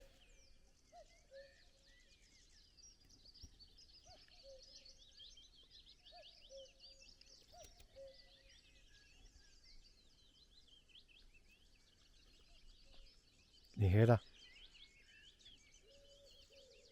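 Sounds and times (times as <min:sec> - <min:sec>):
songbirds chirping and trilling: 0:00.0 - 0:16.9.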